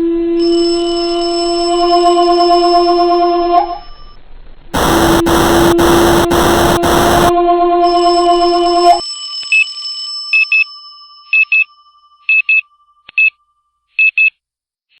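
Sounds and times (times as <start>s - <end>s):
high tones: 4.8s - 7.3s
short high electronic beeps: 4.8s - 7.3s
sustained alarm chord: 4.8s - 7.3s.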